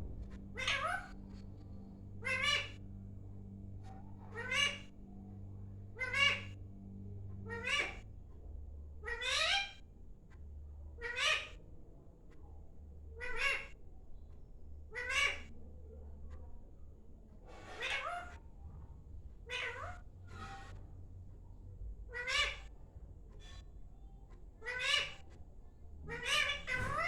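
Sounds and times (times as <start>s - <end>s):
parrot meowing: 0.6s - 1.2s, 2.2s - 2.8s, 4.3s - 4.9s, 6.0s - 6.6s, 7.5s - 8.0s, 9.0s - 9.8s, 11.0s - 11.6s, 13.2s - 13.7s, 14.9s - 15.5s, 17.7s - 18.4s, 19.5s - 20.0s, 22.1s - 22.7s, 24.6s - 25.2s, 26.0s - 27.0s.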